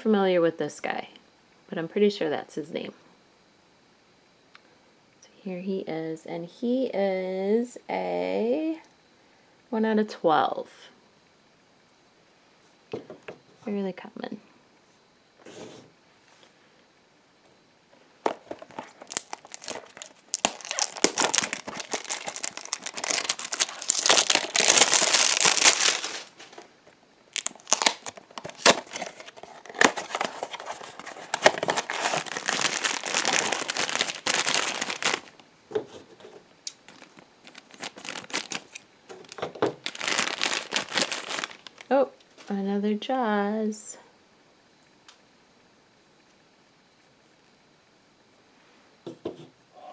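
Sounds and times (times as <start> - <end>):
packaging torn open and crinkled: 18.3 - 26.7, 27.3 - 35.4, 36.7 - 41.9.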